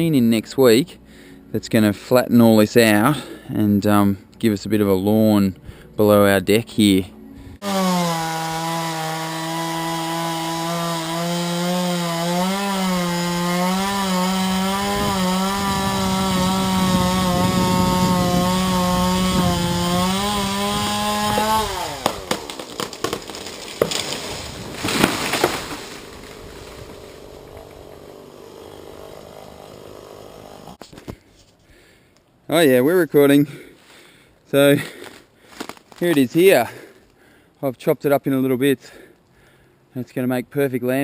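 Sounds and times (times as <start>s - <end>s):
chainsaw cutting wood: 7.6s - 31.2s
tree cracking and crashing down: 19.2s - 29.9s, 35.0s - 36.3s.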